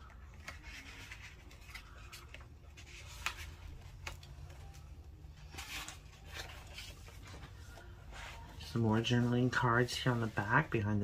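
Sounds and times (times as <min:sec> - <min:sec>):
paper rustling: 0:00.0 - 0:11.0.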